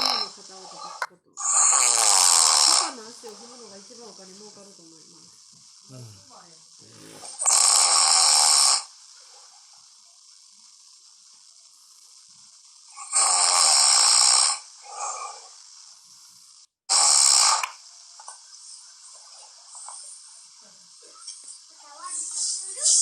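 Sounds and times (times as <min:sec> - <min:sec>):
man snoring: 0:00.0 - 0:03.0, 0:05.9 - 0:08.9, 0:12.9 - 0:15.6, 0:16.9 - 0:17.7
weak snort: 0:05.9 - 0:08.8, 0:13.0 - 0:15.6.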